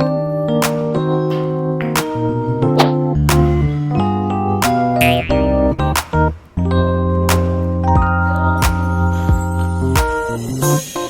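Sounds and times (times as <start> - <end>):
light instrumental music: 0.0 - 11.0.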